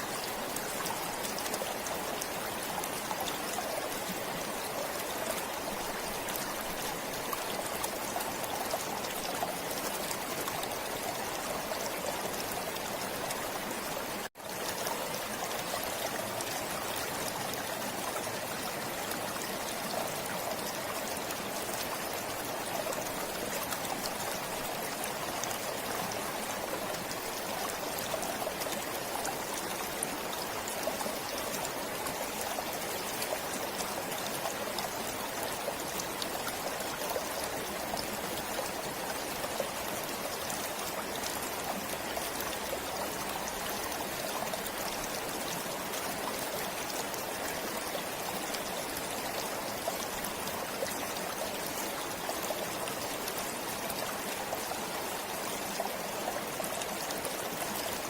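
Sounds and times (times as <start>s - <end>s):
stream flowing over stones: 0.0s - 58.0s.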